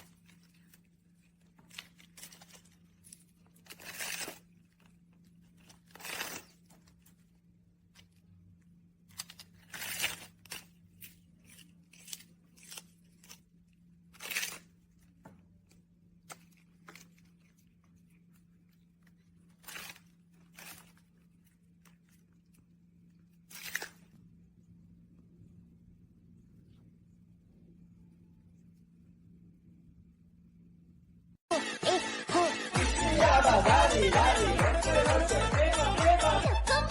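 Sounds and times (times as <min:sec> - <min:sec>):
cat litter scratching: 0:00.0 - 0:08.5, 0:09.1 - 0:24.3.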